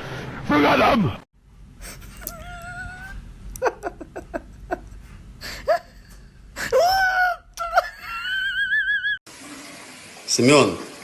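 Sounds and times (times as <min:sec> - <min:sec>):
cat crying: 0:02.2 - 0:03.2.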